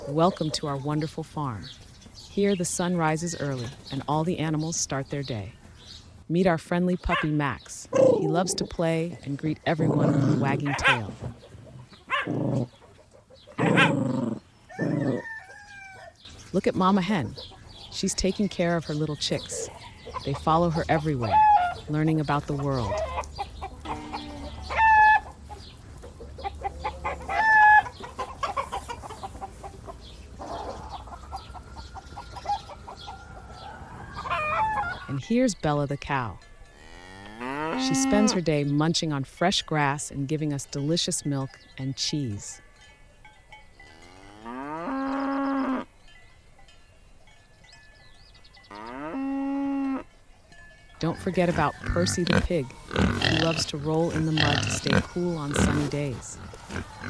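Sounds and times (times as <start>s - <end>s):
hen drawn-out calls: 19.6s - 25.4s, 26.4s - 29.8s, 32.2s - 35.2s, 51.0s - 57.0s
cow mooing: 23.8s - 25.2s, 36.7s - 38.4s, 43.9s - 45.9s, 48.7s - 50.2s, 51.1s - 57.0s.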